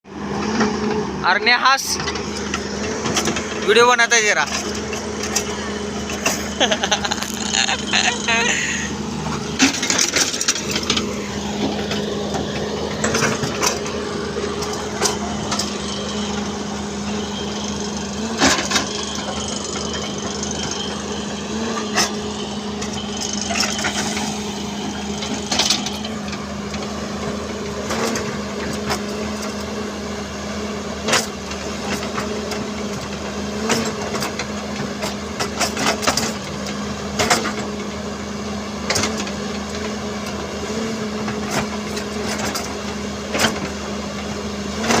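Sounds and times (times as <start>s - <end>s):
machine engine running: 0.1s - 45.0s.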